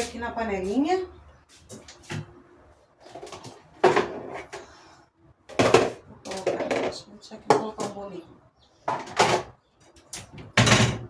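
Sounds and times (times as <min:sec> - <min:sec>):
cookware knocks and clatters: 0:08.9 - 0:09.5, 0:10.6 - 0:11.0.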